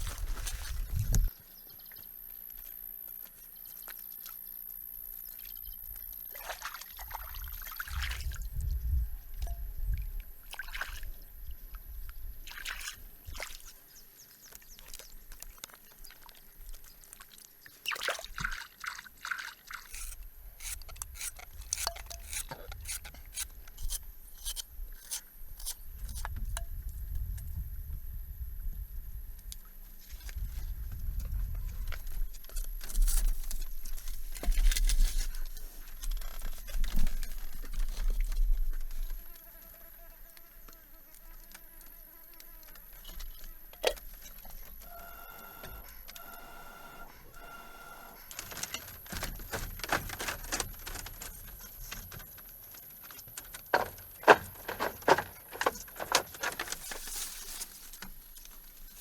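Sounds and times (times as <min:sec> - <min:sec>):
water splashing and trickling: 0:05.3 - 0:08.7, 0:09.3 - 0:11.8, 0:12.4 - 0:21.8
sharp clicks and knocks: 0:48.3 - 0:57.0.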